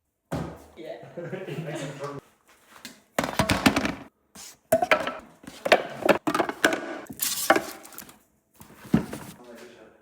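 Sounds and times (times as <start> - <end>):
hard objects knocking and clattering: 3.2 - 4.1, 4.7 - 8.2.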